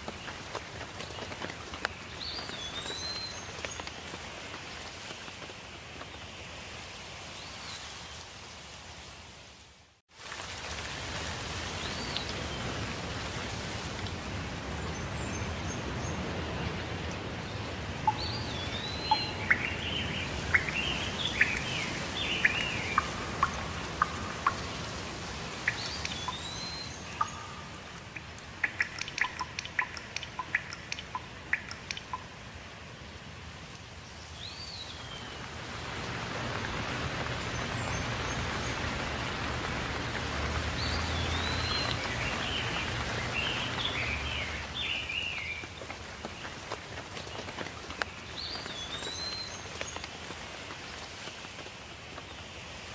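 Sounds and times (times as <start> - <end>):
steady rain: 0.0 - 52.9
birds calling and chirping: 17.5 - 32.2, 40.7 - 45.7
sharp ticks: 27.2 - 32.3.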